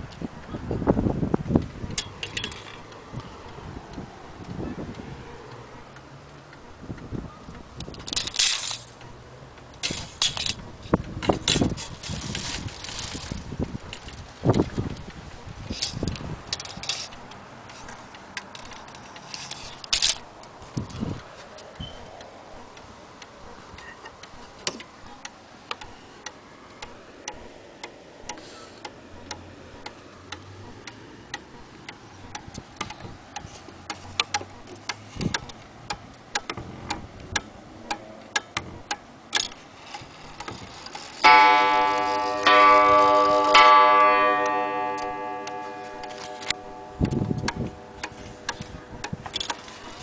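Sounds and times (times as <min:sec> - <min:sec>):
wall clock ticking: 0:24.2 - 0:40.6, 0:41.2 - 0:50.0
clock strike ringing: 0:41.2 - 0:50.0.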